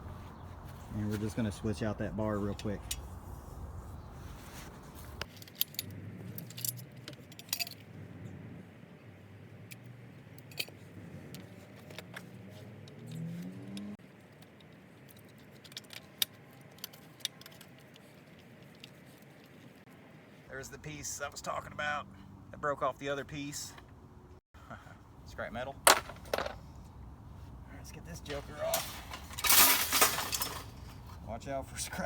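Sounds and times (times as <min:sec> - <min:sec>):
metal parts clinking and rattling: 0:05.2 - 0:08.0, 0:09.7 - 0:19.8, 0:25.9 - 0:26.7, 0:28.3 - 0:31.1.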